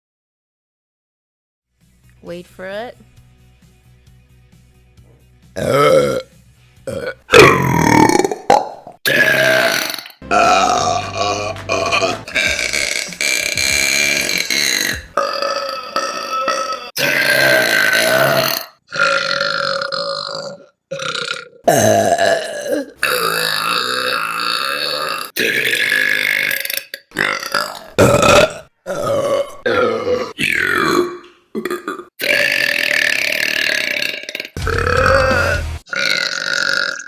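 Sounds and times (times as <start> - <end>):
women burping: 5.6 - 6.3, 6.9 - 20.2, 21.0 - 26.4, 27.2 - 33.4.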